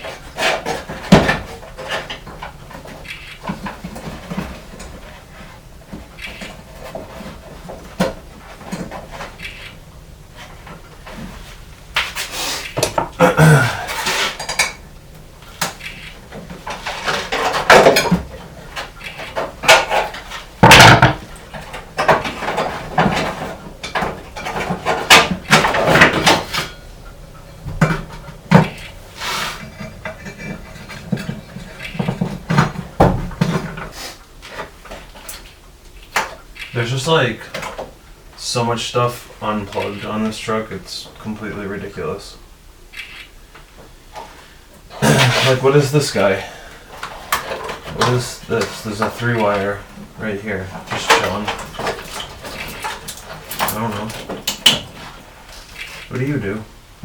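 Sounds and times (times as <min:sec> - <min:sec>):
metal tools clinking and clanking: 0:13.9 - 0:14.9, 0:50.8 - 0:56.1.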